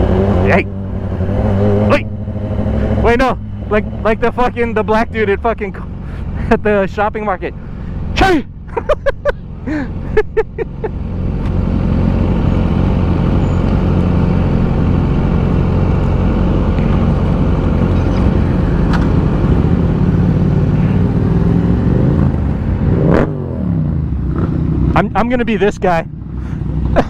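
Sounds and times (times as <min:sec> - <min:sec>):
motorcycle engine running: 0:00.0 - 0:27.0.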